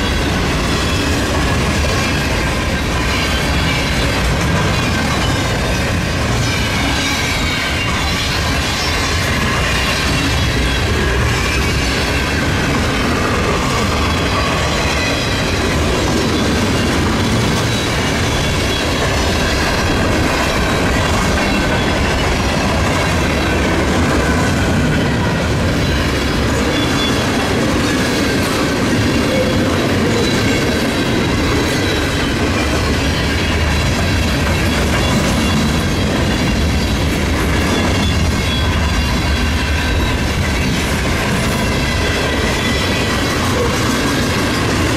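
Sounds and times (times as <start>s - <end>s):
train wheels clicking over rails: 0.0s - 44.9s
wheel squeal: 25.0s - 28.0s.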